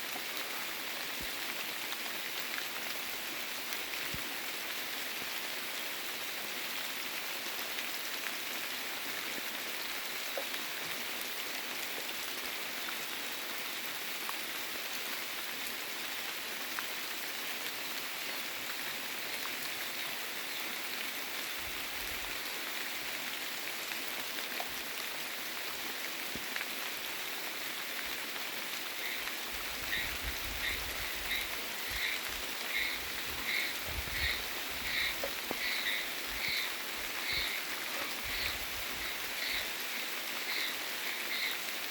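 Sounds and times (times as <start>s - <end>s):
rain pattering: 0.0s - 41.9s
frog calling in pulses: 29.0s - 41.6s.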